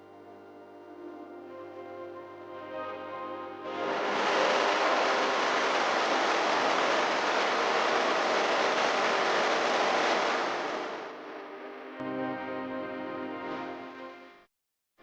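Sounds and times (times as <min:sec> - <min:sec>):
waterfall rushing: 0:03.7 - 0:11.2.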